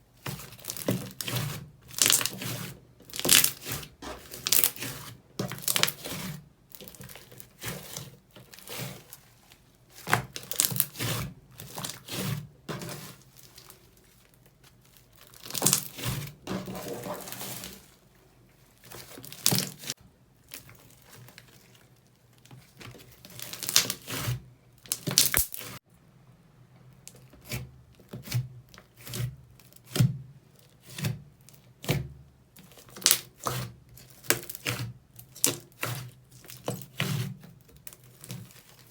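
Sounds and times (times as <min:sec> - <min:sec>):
slime crackling and clicking: 0:24.9 - 0:25.6.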